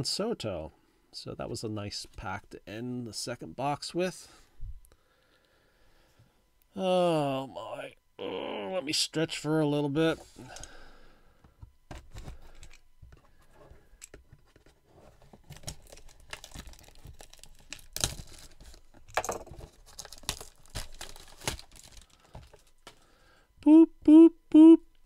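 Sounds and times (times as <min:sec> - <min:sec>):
packaging tearing: 0:15.4 - 0:19.0, 0:19.7 - 0:23.0
foil wrappers crinkling: 0:15.4 - 0:23.1.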